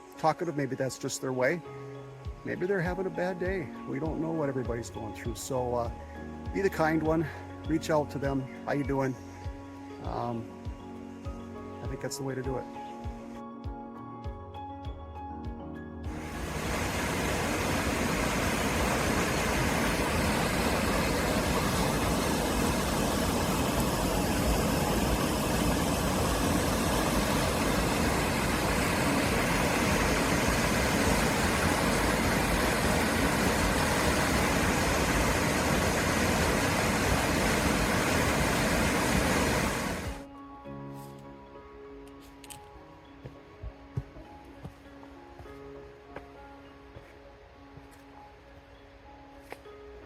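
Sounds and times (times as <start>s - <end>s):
rushing river water: 16.1s - 40.3s.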